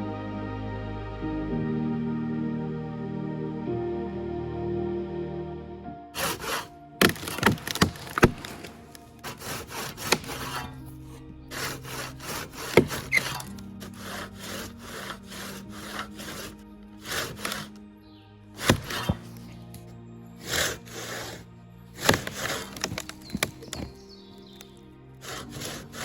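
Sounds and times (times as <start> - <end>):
soft background music: 0.0 - 26.0
handsaw cutting wood: 6.2 - 10.9, 11.5 - 17.8, 18.6 - 19.5, 20.4 - 21.4, 22.0 - 26.0.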